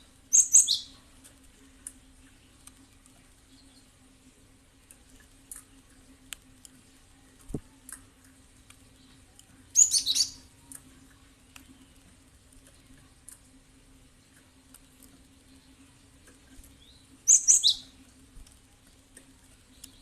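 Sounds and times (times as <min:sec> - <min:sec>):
faint high chirps and ticks: 0:00.0 - 0:20.0
faint steady hum: 0:00.0 - 0:20.0
bird high calls: 0:09.8 - 0:10.4, 0:17.3 - 0:17.9.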